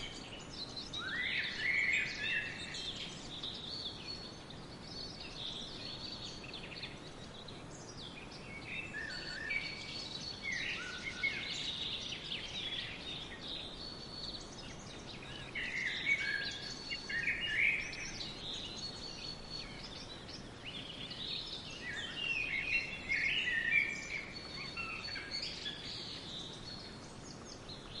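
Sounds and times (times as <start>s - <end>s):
faint steady background noise: 0.0s - 28.0s
songbirds singing: 0.0s - 28.0s.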